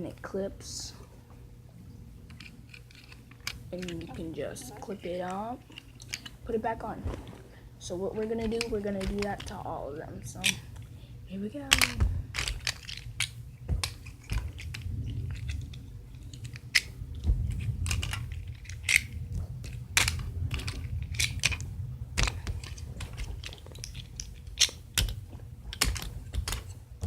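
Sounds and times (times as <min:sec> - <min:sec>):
low handling rumble: 0:00.0 - 0:27.0
handling rustle: 0:02.2 - 0:27.0
plastic clicks and snaps: 0:08.4 - 0:10.9, 0:11.7 - 0:26.8.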